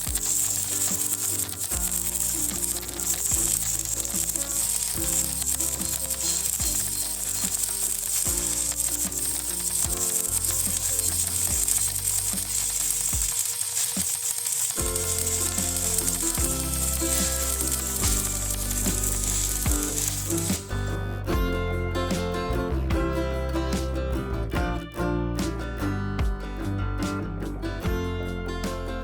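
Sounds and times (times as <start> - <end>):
welding arc crackling sizzle: 0.0 - 20.8
background music: 0.0 - 29.0.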